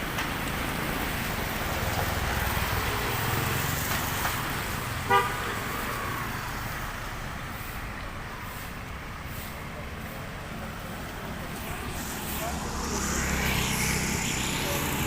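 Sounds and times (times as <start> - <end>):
road traffic passing: 0.0 - 15.0
vehicle horn toot: 5.1 - 5.4.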